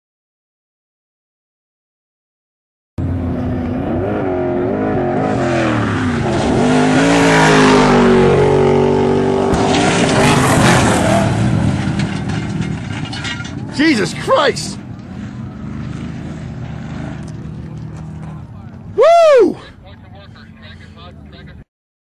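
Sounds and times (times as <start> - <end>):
race vehicle engine passing: 3.0 - 21.0.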